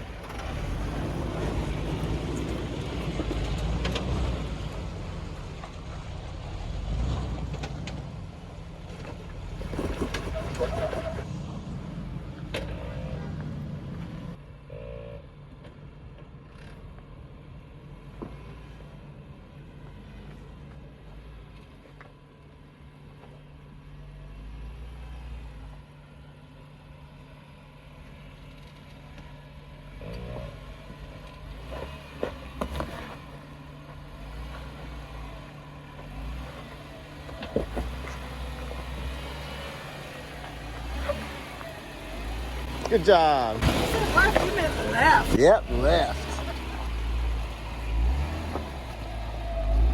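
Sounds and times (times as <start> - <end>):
off-road engine rumbling: 0.0 - 49.9
knocks and clatters on rocks: 8.9 - 11.1.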